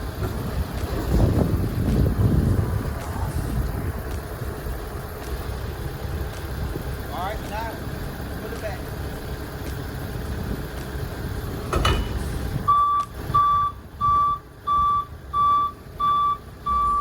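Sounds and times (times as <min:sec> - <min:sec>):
forklift engine running: 0:00.0 - 0:17.0
clunk: 0:11.6 - 0:13.1
reversing alarm beeping: 0:12.7 - 0:17.0.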